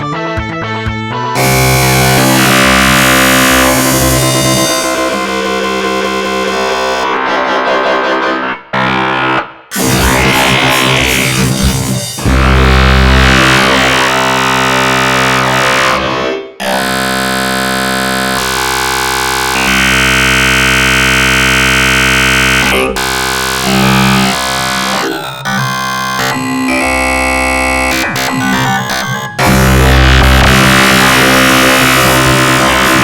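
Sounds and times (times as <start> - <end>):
distorted synthesizer chords: 0.1 - 33.0.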